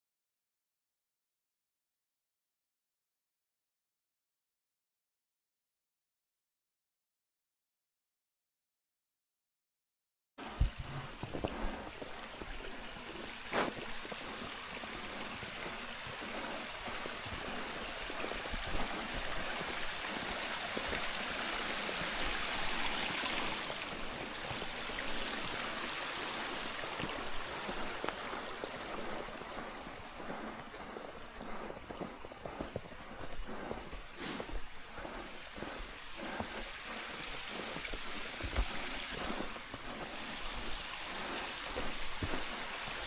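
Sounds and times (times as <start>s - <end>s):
mountain water rushing: 10.4s - 43.0s.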